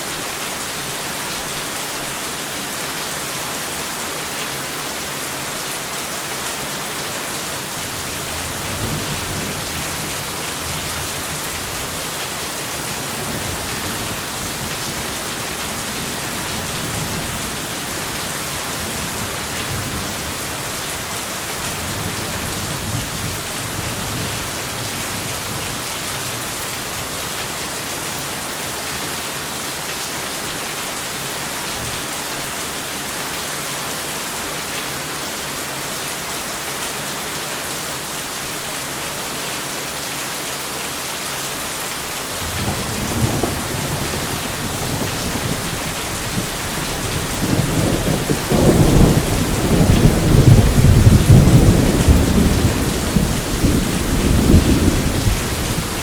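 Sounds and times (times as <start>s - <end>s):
heavy rain: 0.0s - 56.0s
rolling thunder: 42.4s - 56.0s.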